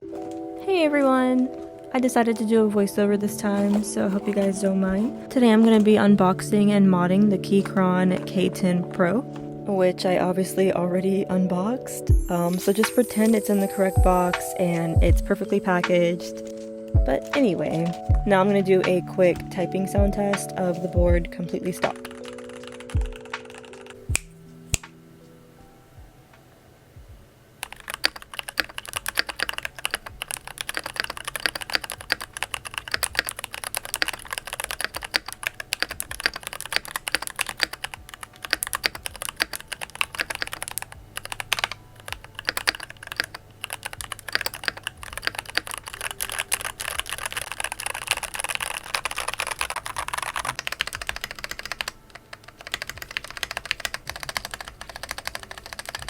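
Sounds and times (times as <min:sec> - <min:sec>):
mechanical keyboard typing: 0:02.0 - 0:09.3, 0:17.1 - 0:24.2, 0:27.6 - 0:56.0.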